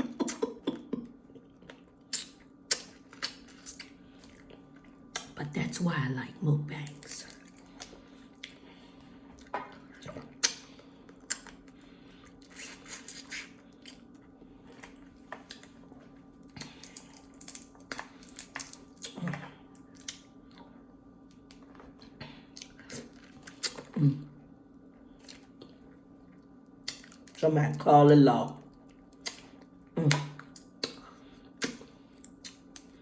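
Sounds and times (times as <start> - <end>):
wet chewing: 0.2 - 5.4, 6.8 - 20.7, 21.3 - 24.0, 25.1 - 27.8, 28.6 - 33.0
clicks and crackles: 16.6 - 19.3.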